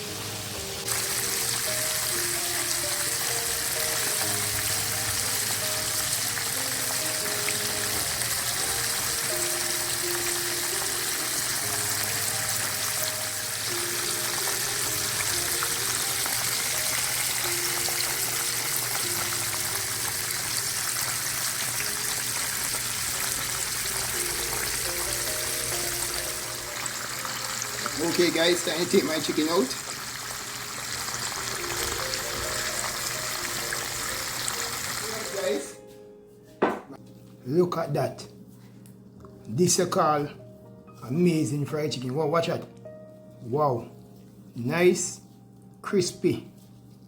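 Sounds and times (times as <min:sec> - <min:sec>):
chicken deep-frying in oil: 0:00.0 - 0:35.6
slow melodic background music: 0:00.0 - 0:47.0.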